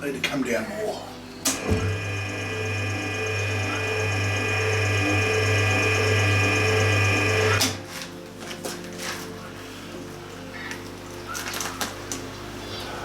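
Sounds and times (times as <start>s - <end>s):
milling machine humming: 1.5s - 7.8s.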